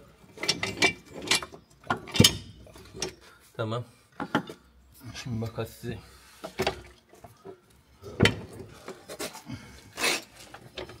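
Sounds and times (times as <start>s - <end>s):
metal tools clanking: 0.3s - 3.2s.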